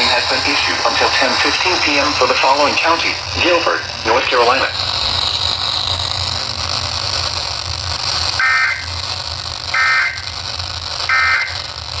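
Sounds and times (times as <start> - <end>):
digital data bursts: 0.0 - 6.2, 8.4 - 9.1, 9.7 - 12.0
radio hiss and hum: 0.0 - 12.0.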